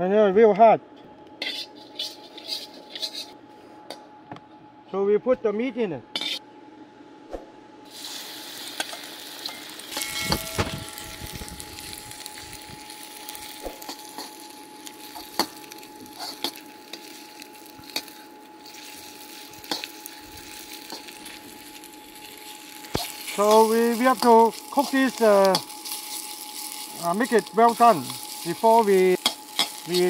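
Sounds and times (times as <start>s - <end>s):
meat sizzling in hot oil: 7.9s - 30.0s.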